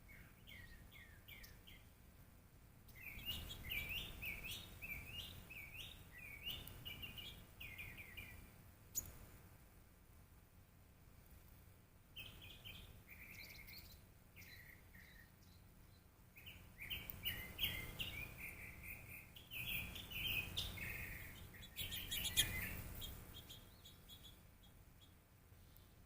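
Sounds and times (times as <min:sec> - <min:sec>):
small birds chirping: 0:00.0 - 0:26.0.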